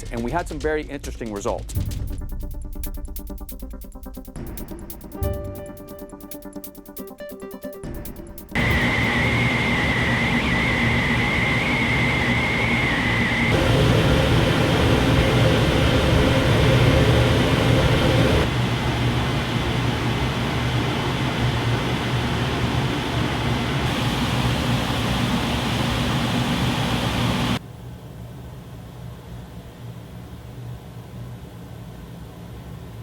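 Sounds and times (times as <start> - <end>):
fan hum: 8.6 - 33.0
range hood fan whooshing: 8.6 - 33.0.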